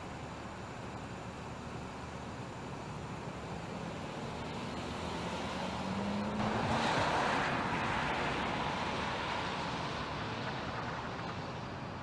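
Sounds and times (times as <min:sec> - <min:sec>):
vehicle passing by: 0:04.7 - 0:09.8.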